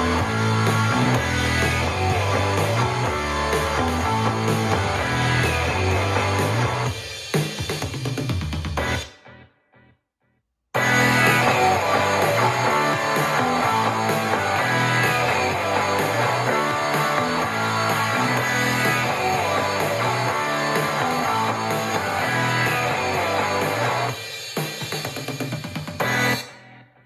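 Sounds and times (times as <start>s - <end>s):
guitar music through a speaker: 0.0s - 6.9s, 10.8s - 24.2s, 26.0s - 27.0s.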